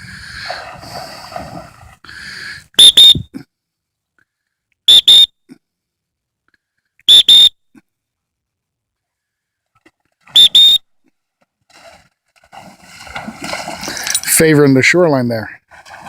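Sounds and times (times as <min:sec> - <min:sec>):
short shrill whistle toots: 0:02.8 - 0:03.3, 0:04.9 - 0:05.4, 0:07.1 - 0:07.6, 0:10.3 - 0:10.8.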